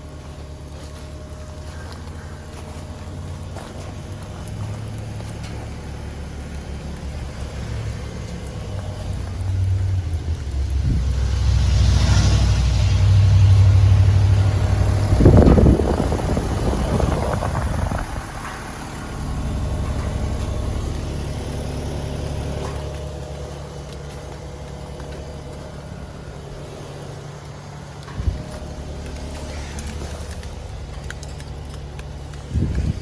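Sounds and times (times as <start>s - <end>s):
heat pump compressor and fan hum: 0.0s - 33.0s
loud noisy burst: 10.4s - 23.2s.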